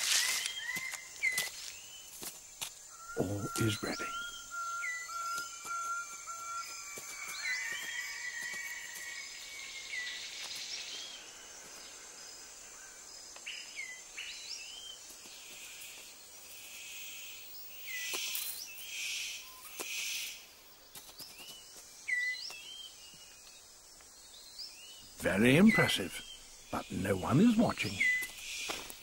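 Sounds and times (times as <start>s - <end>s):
high insect drone: 0.0s - 29.0s
whistled bird calls: 2.9s - 10.2s, 25.2s - 28.8s.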